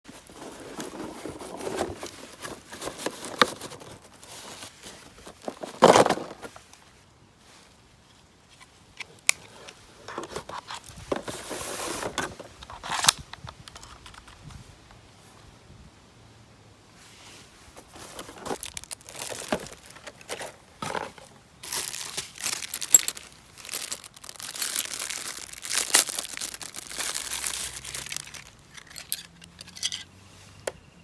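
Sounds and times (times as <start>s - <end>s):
rustling and crinkling: 0.1s - 15.6s, 16.9s - 31.0s.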